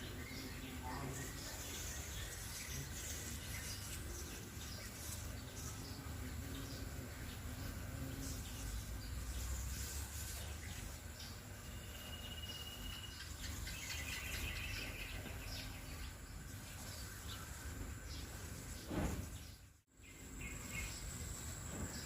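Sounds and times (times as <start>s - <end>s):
bees buzzing: 0.0s - 12.8s
birds chirping: 0.0s - 22.0s.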